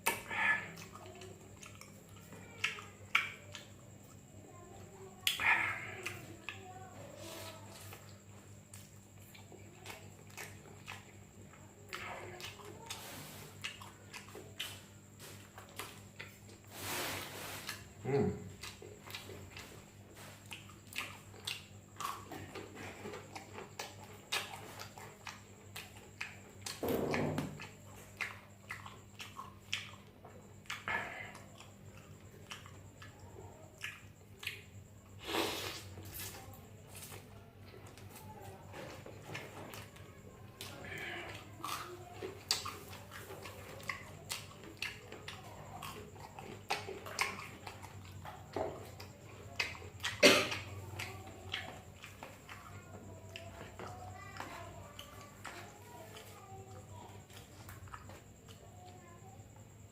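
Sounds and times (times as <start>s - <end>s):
person chewing food: 0.0s - 59.9s.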